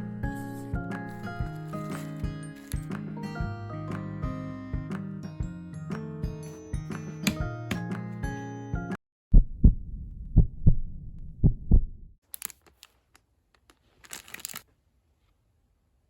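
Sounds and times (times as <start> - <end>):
heartbeat double thumps: 9.3 - 12.1
light clicking and crinkling: 12.2 - 14.7.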